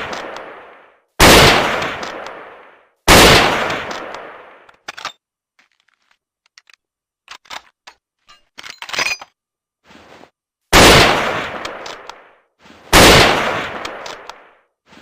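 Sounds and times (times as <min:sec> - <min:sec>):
rifle shots echoing: 0:00.0 - 0:04.7, 0:10.7 - 0:12.3, 0:12.9 - 0:14.6.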